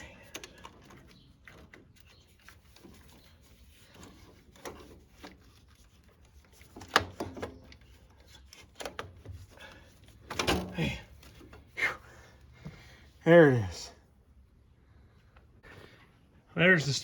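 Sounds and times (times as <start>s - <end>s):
knocks and scraping of metal: 0.0s - 11.8s.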